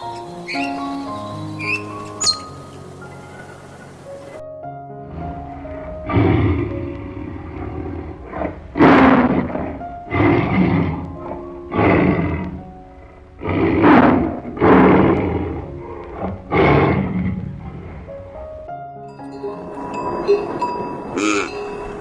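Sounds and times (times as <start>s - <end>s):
animal giving rough calls: 0.0s - 4.0s, 5.1s - 18.5s
background music: 0.0s - 22.0s.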